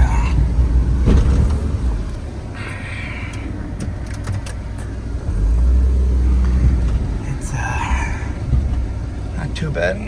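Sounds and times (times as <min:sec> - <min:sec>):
car engine running: 0:00.0 - 0:10.0
plow blade pushing snow: 0:05.1 - 0:10.0.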